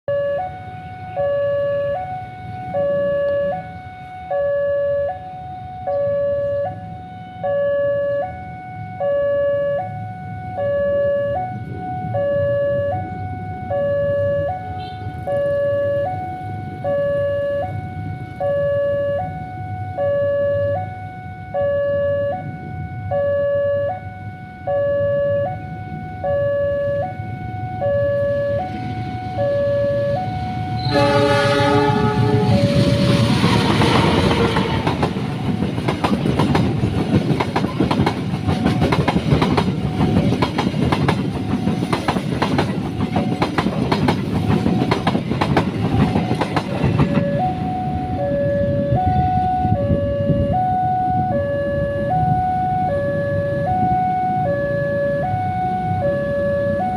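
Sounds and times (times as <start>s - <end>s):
two-tone crossing alarm: 0.1s - 56.9s
traffic rumble: 0.4s - 56.9s
approaching train rushing: 24.8s - 56.9s.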